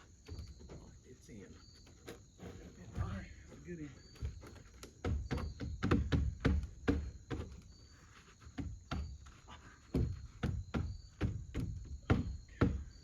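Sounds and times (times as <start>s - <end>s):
heavy knocks on wood: 4.2s - 7.7s, 8.5s - 13.0s.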